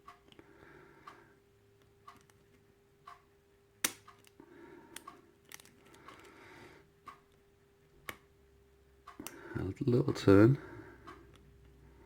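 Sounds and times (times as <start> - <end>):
lock pick clicking and scraping: 5.0 - 6.3.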